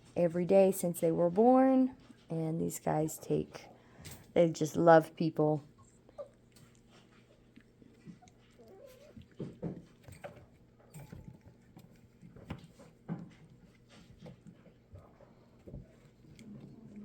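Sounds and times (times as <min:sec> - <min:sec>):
puppy whine: 0:05.8 - 0:06.6, 0:08.0 - 0:10.3
paws and toys knocking and scuffling: 0:06.6 - 0:17.0.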